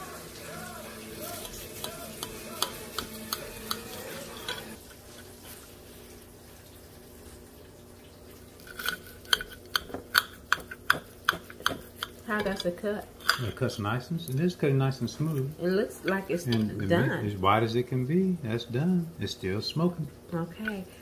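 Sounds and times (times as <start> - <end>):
knife and fork scraping plate: 1.3 - 5.2, 8.7 - 9.8.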